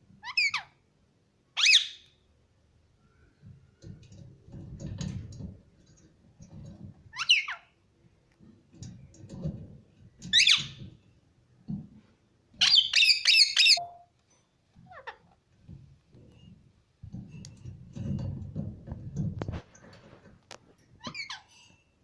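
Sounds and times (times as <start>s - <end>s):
parrots squawking: 0.2s - 0.7s, 1.6s - 2.0s, 7.2s - 7.7s, 12.6s - 13.8s.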